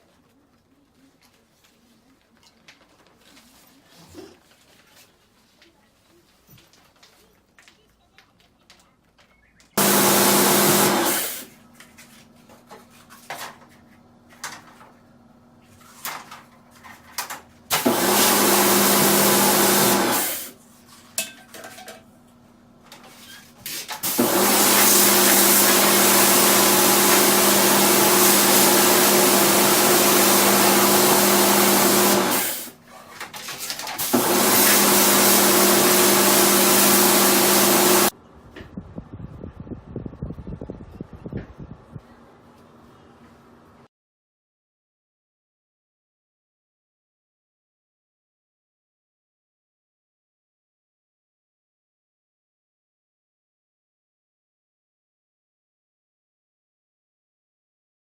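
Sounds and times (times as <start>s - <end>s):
loud hiss of spray: 9.8s - 11.5s, 24.0s - 32.7s, 34.0s - 38.1s
pressure washer motor hum: 9.8s - 11.5s, 17.7s - 20.5s, 24.0s - 32.7s, 34.0s - 38.1s.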